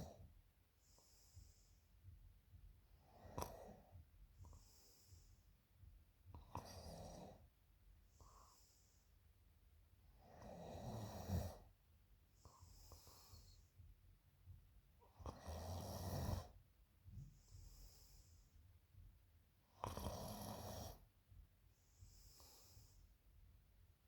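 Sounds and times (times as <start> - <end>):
soft breathing hiss: 0.0 - 23.6
woman snoring: 10.3 - 11.6, 15.2 - 16.6, 19.8 - 21.0.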